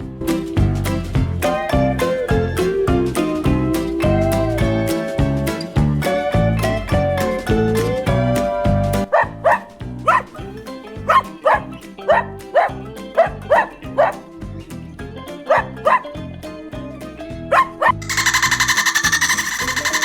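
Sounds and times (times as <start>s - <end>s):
dog barking: 9.1s - 10.4s, 11.0s - 14.2s, 15.5s - 16.1s, 17.5s - 18.2s.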